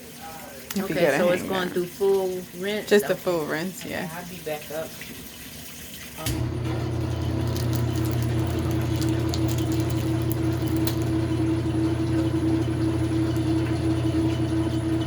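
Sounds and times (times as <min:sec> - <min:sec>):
washing machine hum: 0:00.0 - 0:15.0
light crackles: 0:07.4 - 0:11.2.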